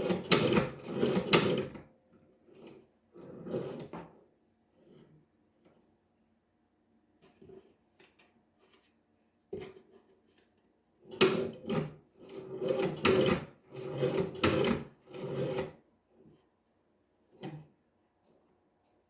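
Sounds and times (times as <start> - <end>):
sewing machine clunking: 0.0 - 1.8, 12.5 - 15.7.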